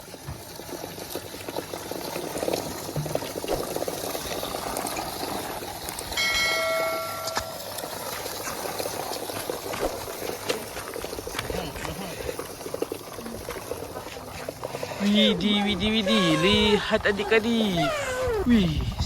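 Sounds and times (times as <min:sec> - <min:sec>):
bell-like chime: 0:06.2 - 0:07.8
patter of small crackles: 0:08.2 - 0:15.2.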